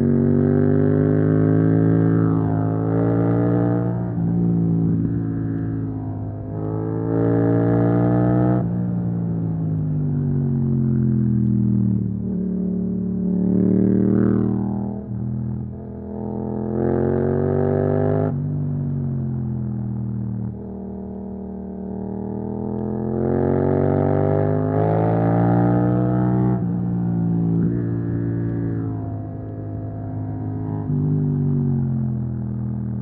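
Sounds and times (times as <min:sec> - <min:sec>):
motorcycle engine revving: 0:00.0 - 0:09.0, 0:20.5 - 0:33.0.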